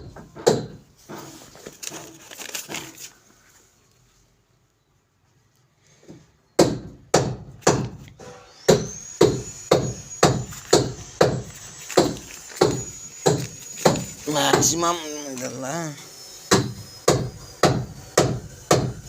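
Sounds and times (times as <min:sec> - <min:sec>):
hammer blows: 0:06.0 - 0:15.1.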